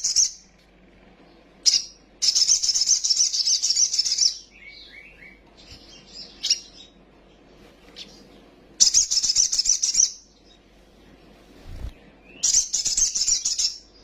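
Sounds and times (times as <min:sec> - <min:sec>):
bird twittering: 0:01.6 - 0:07.0, 0:07.9 - 0:10.6, 0:12.2 - 0:14.0.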